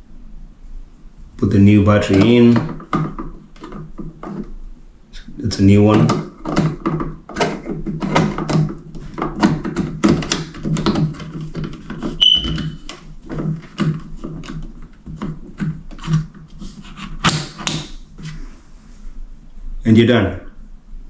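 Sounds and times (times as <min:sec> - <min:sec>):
plastic clicks and knocks: 0:02.1 - 0:04.5, 0:05.9 - 0:16.5
smoke detector beep: 0:12.2 - 0:12.8.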